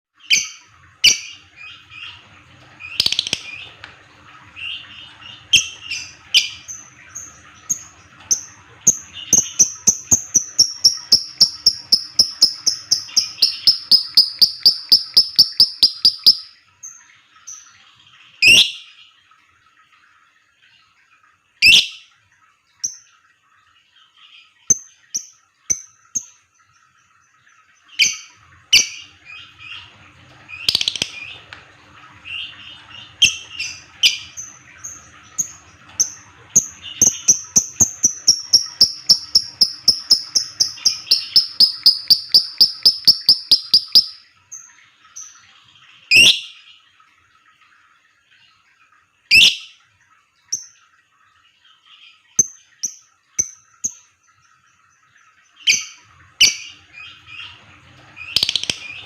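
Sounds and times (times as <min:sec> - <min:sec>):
lovebird chirping and ticking: 0:02.8 - 0:03.6, 0:05.6 - 0:16.6, 0:30.5 - 0:31.4, 0:33.2 - 0:44.2, 0:58.2 - 0:59.0.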